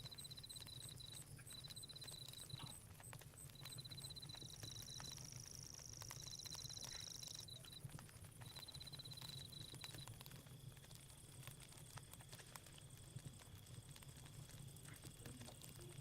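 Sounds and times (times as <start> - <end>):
crickets chirping: 0.0 - 7.8, 8.4 - 11.4
campfire crackling: 0.0 - 16.0.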